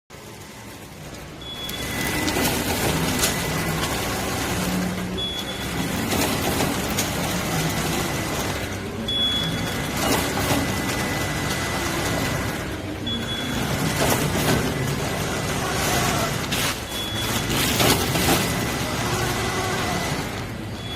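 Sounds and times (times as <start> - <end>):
packaging machine running: 0.1 - 20.9
mechanical clicks and clatter: 0.6 - 20.8
short high beep: 16.8 - 17.5.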